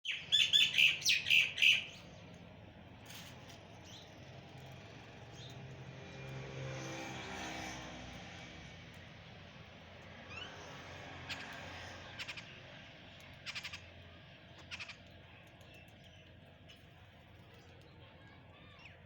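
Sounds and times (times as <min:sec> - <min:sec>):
high chirping bird calls: 0:00.0 - 0:02.1.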